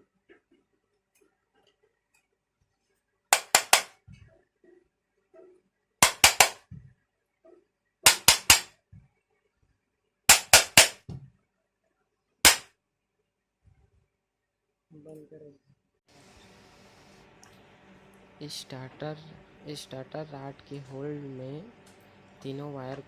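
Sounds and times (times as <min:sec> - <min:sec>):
hammer knocking on metal: 0:03.4 - 0:03.9, 0:06.0 - 0:06.8, 0:08.1 - 0:08.7.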